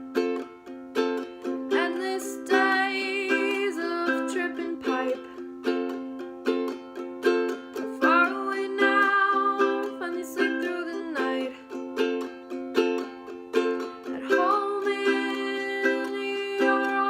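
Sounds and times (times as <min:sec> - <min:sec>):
ukulele strumming chords: 0:00.0 - 0:17.0
person singing: 0:01.6 - 0:05.6, 0:07.7 - 0:12.3, 0:13.3 - 0:17.0.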